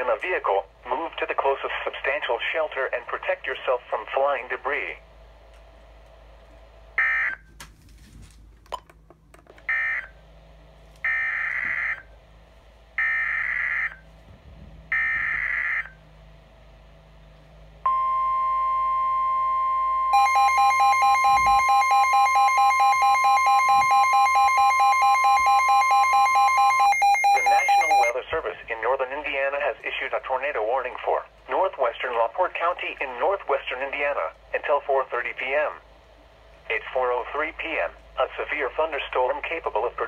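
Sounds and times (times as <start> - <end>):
steady alarm tone: 11.0 - 12.1, 13.0 - 14.1, 14.9 - 16.0, 17.8 - 28.2
rapidly pulsing alert beeps: 20.2 - 28.1.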